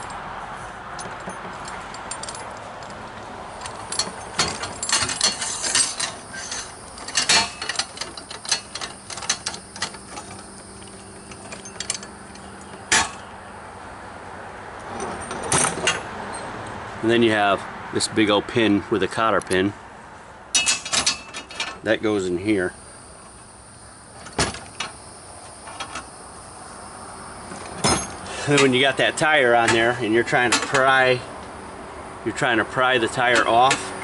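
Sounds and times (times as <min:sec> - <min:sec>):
steel parts clinking: 0:00.9 - 0:13.3, 0:14.9 - 0:16.5, 0:20.6 - 0:21.9, 0:24.2 - 0:26.1, 0:27.5 - 0:31.2, 0:33.1 - 0:33.9.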